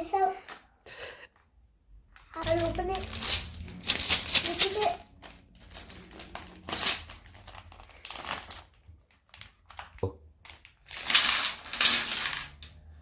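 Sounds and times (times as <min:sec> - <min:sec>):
packaging crinkling and rustling: 0:02.1 - 0:11.8.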